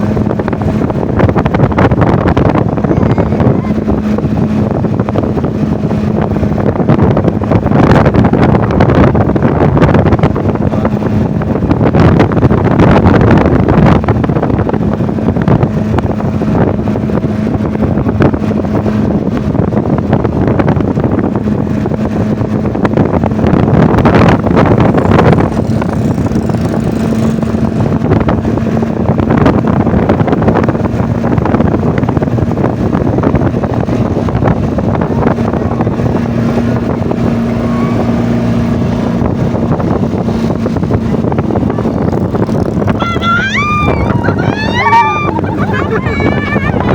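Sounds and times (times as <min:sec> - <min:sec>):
vehicle engine running: 0:00.0 - 0:46.9
wind buffeting microphone: 0:00.0 - 0:46.9.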